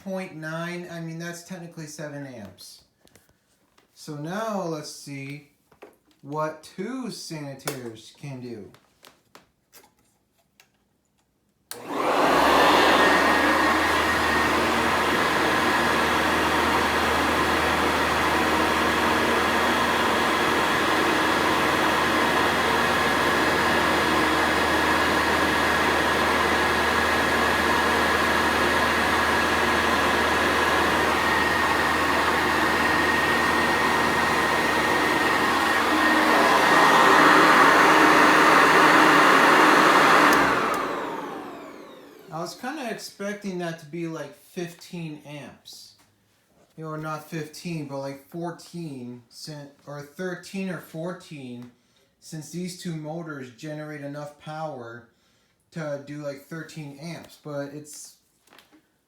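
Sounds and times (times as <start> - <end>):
vacuum cleaners whining: 11.7 - 42.8.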